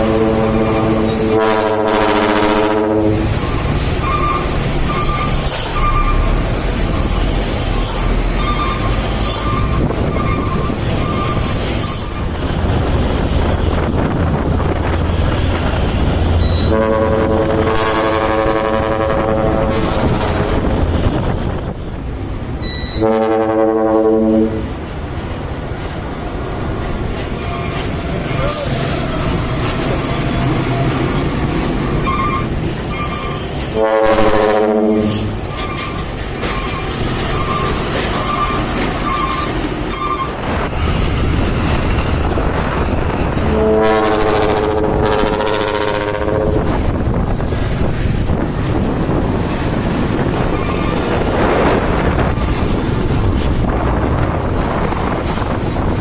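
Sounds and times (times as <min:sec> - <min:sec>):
truck trumpet horn blast: 0:00.0 - 0:03.4, 0:16.4 - 0:20.1, 0:22.7 - 0:24.7, 0:33.2 - 0:35.4, 0:43.4 - 0:46.6
road noise: 0:00.0 - 0:56.0
truck engine rumbling: 0:00.0 - 0:56.0.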